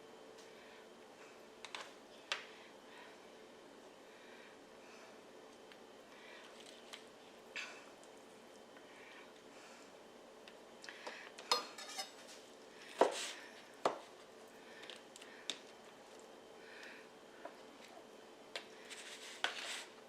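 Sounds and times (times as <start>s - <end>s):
dishes and utensils clinking: 11.5s - 12.3s.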